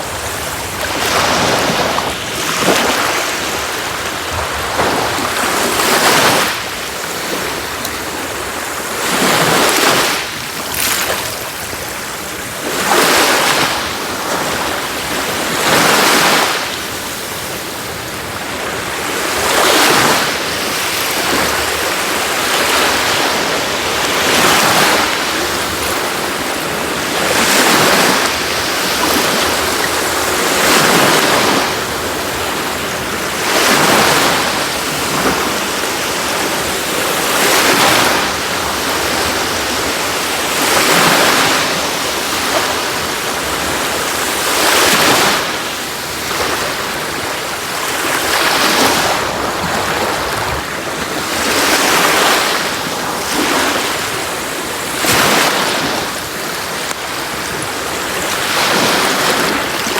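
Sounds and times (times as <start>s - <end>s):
sea waves breaking on shore: 0.0s - 59.9s.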